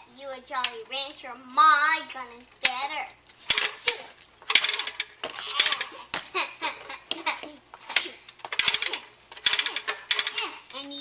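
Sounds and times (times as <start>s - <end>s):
toy guns clicking and rattling: 2.6s - 11.0s
children laughing: 5.3s - 8.3s
children making shooting noises: 9.7s - 11.0s.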